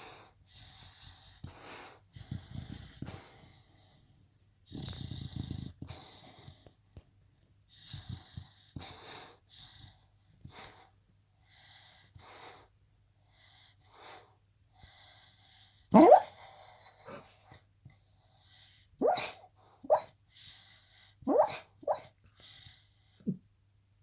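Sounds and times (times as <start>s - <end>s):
dog snoring: 0.2s - 3.6s, 4.6s - 6.7s, 7.7s - 10.0s.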